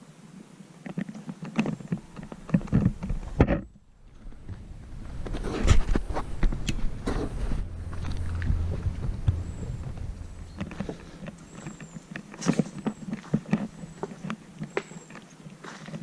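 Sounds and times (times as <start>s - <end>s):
low rumble: 3.9s - 11.8s
footsteps with scuffs: 4.1s - 16.0s.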